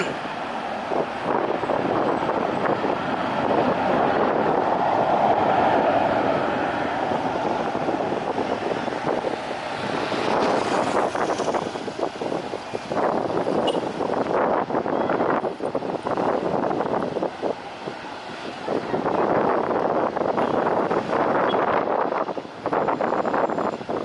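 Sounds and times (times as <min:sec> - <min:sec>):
aircraft engine passing by: 0:00.0 - 0:12.7
wind buffeting microphone: 0:00.0 - 0:24.0.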